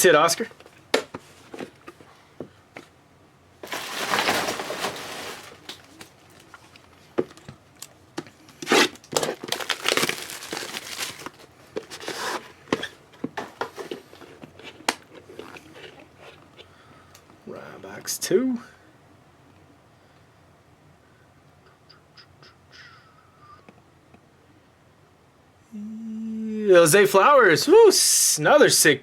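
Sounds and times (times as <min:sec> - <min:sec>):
plastic packaging crinkling and tearing: 0:03.6 - 0:16.6.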